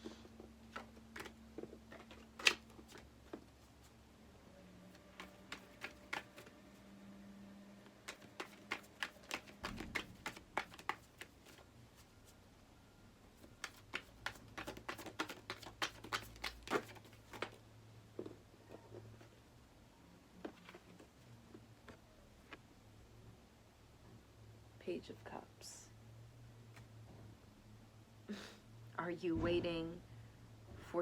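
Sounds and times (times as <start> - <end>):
cards being shuffled: 0.4 - 4.0, 4.9 - 6.8, 7.8 - 12.1, 13.4 - 17.6.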